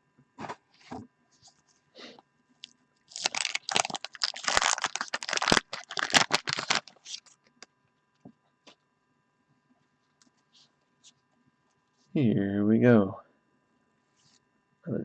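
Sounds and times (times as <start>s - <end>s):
card pack tearing and crinkling: 3.1s - 7.4s.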